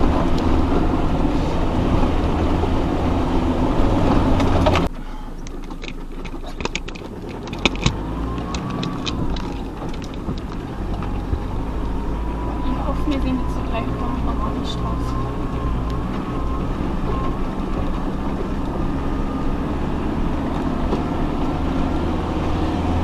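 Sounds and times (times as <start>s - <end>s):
off-road vehicle engine rumbling: 0.0s - 23.0s
clicks and knocks: 4.4s - 11.5s.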